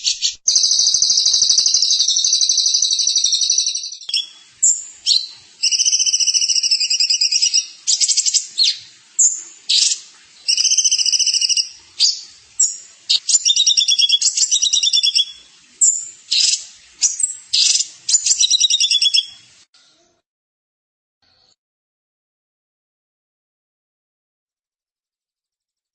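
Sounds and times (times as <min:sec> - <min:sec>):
songbird trilling: 0:00.0 - 0:19.4.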